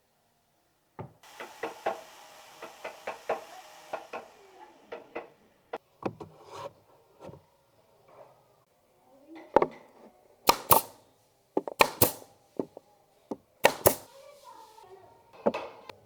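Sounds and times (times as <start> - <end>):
rubbing hiss: 13.7 - 14.9.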